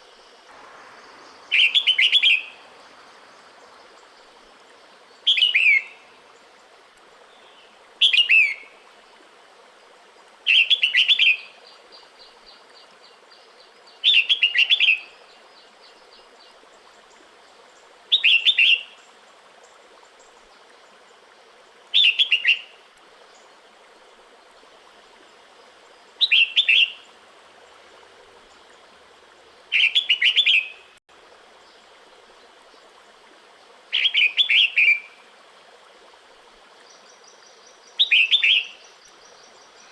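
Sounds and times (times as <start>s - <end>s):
bird calling high quick notes: 1.1s - 2.8s.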